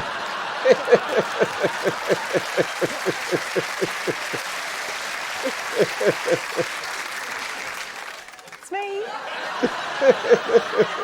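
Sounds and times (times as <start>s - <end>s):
person laughing hard: 0.0s - 4.4s, 5.4s - 6.7s, 9.6s - 11.0s
audience applauding and laughing: 0.0s - 11.0s.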